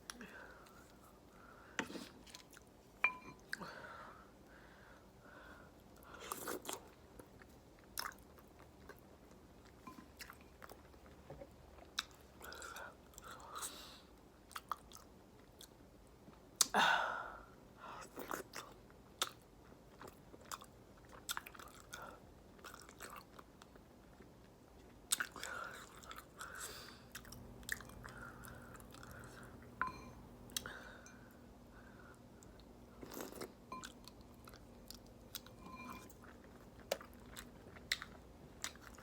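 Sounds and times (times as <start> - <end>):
person chewing food: 6.0 - 13.7, 18.0 - 39.0.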